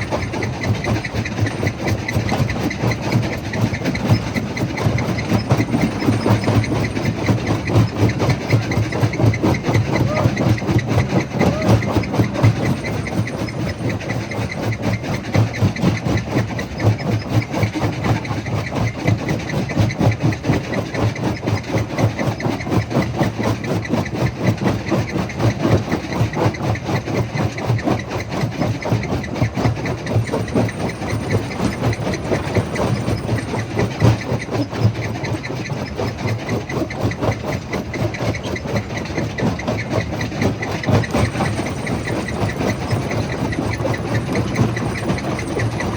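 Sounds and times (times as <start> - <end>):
crusher machine rumbling: 0.0 - 17.1, 28.8 - 45.9
rapid clatter: 0.0 - 45.9.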